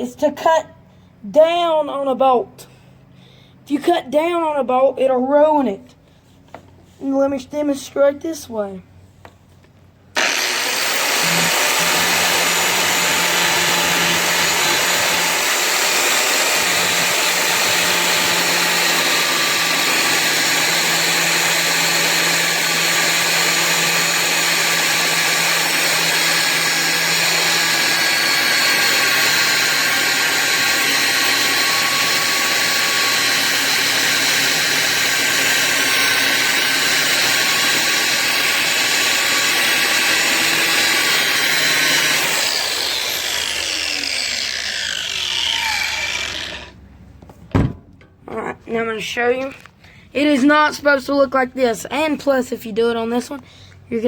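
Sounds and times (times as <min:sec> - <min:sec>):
angle grinder cutting metal: 0:10.2 - 0:46.8.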